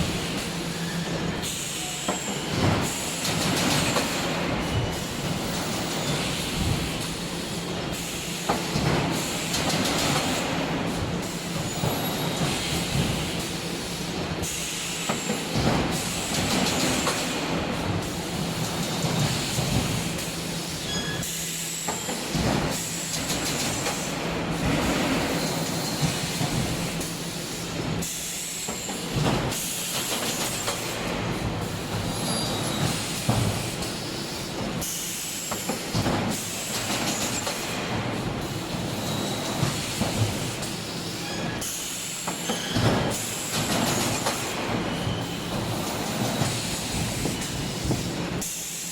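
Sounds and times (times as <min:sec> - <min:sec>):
hiss: 0:25.3 - 0:48.9.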